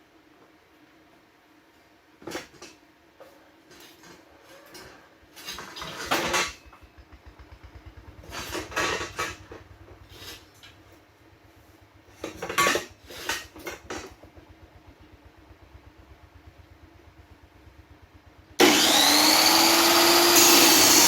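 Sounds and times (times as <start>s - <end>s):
low fast throb: 6.7s - 10.1s.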